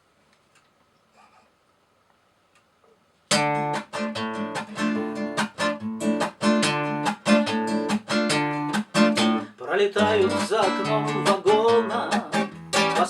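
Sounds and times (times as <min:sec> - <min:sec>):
acoustic guitar strumming chords: 0:03.3 - 0:13.0.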